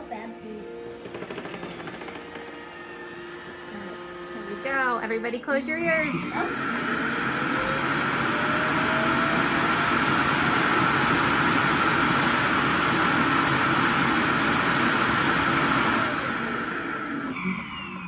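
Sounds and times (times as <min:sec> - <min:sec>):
suction fan running: 0:00.0 - 0:18.0.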